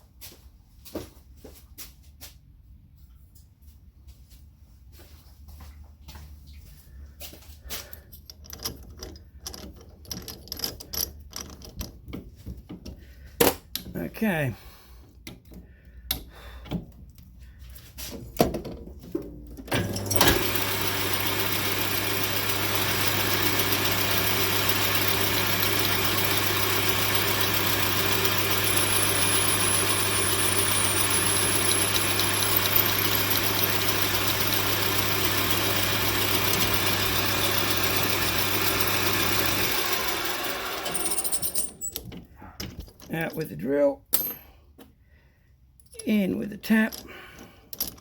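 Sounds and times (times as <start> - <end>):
electric motor running steadily: 19.8 - 41.8
drill bit boring into metal: 19.8 - 41.9.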